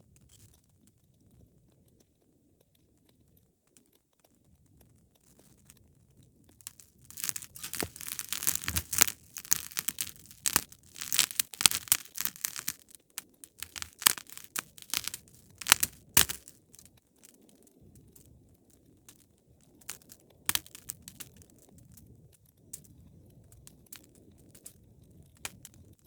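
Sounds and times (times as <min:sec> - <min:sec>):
wood fire crackling and popping: 0:06.6 - 0:16.8, 0:19.9 - 0:21.3.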